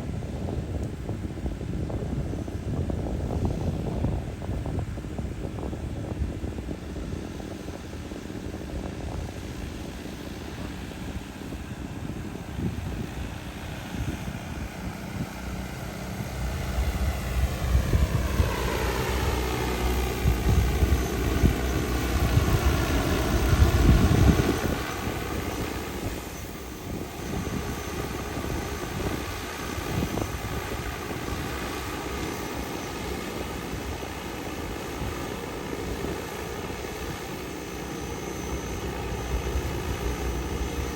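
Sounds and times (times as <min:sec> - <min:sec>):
drone flying past buzzing: 0:13.7 - 0:40.9.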